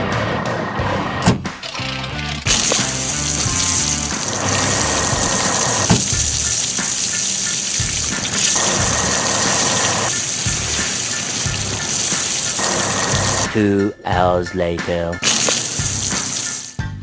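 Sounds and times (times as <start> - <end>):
background music with bass line: 0.0 - 17.0
cartoon water spraying hiss: 1.6 - 13.5, 15.2 - 16.8.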